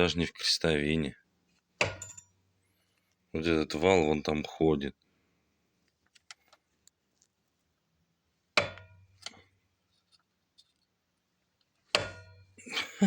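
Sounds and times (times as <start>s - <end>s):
ringing metallic knock: 1.8s - 2.3s, 12.0s - 12.5s.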